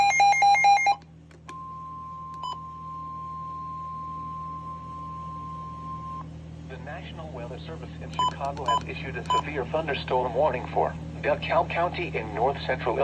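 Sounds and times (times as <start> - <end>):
steady warning alarm tone: 0.0 - 1.0
low hum: 0.0 - 13.0.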